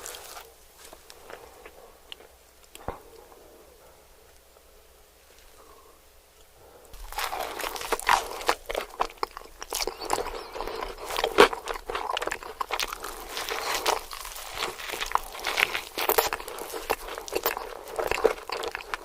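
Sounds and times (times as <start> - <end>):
crunchy bites and chewing: 0.0 - 3.0, 7.0 - 19.0.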